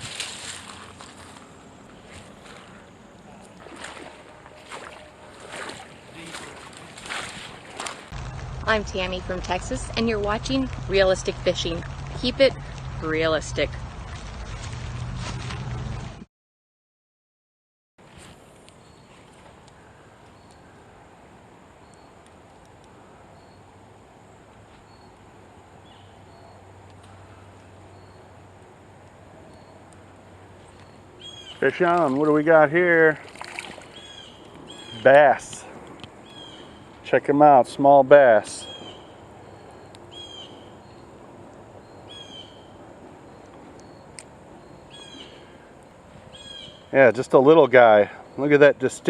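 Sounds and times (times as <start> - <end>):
outdoor background hiss: 0.0 - 14.1, 18.0 - 49.0
bird calling: 29.5 - 37.0, 38.4 - 41.2, 41.8 - 47.0.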